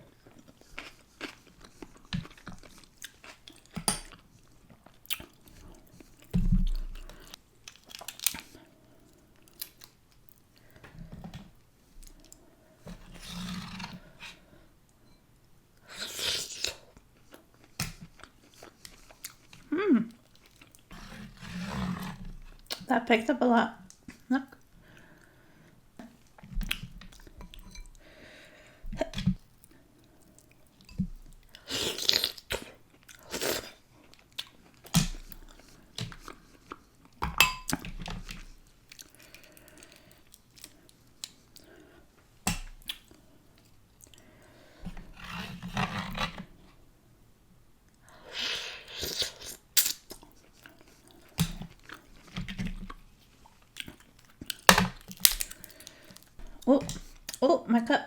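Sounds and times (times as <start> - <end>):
person chewing and smacking food: 0.1 - 10.8, 17.0 - 20.9, 26.0 - 28.0, 28.9 - 44.4, 49.4 - 57.4
crunchy bites: 53.8 - 56.3.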